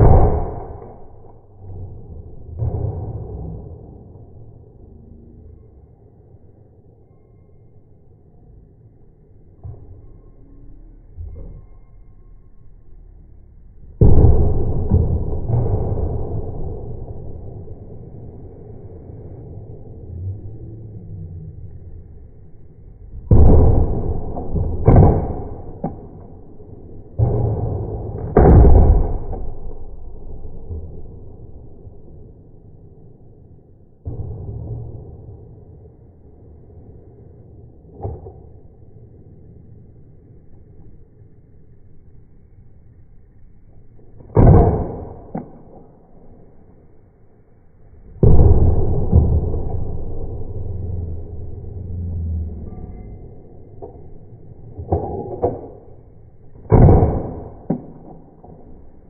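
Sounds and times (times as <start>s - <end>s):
loud gunshots with echo: 0.0s - 1.2s, 23.3s - 26.3s, 27.1s - 30.0s.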